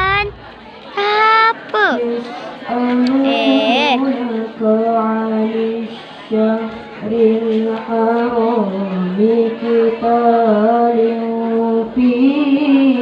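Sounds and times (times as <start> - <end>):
child chanting melodically: 0.0 - 4.3.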